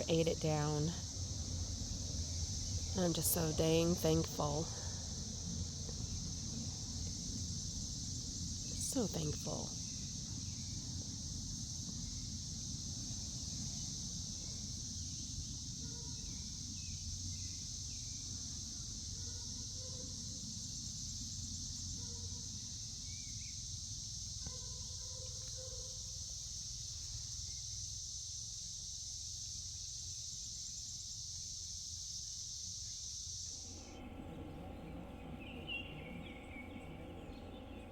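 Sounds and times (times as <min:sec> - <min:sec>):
low background rumble: 0:00.0 - 0:28.2, 0:33.5 - 0:37.9
insect chorus buzzing: 0:00.0 - 0:37.9
faint bird chirps: 0:33.6 - 0:37.9.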